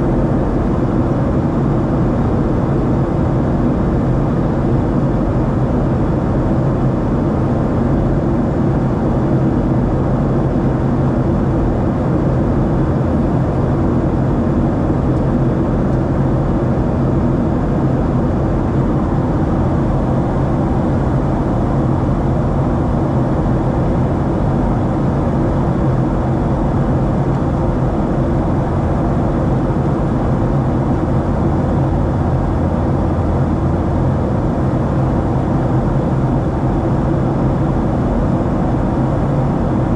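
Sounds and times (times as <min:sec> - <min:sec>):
low airflow rumble: 0:00.0 - 0:39.9.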